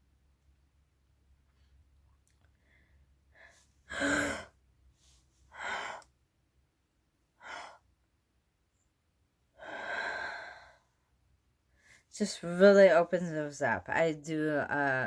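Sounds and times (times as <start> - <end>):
woman breathing in deeply: 2.5 - 6.1, 9.6 - 11.0.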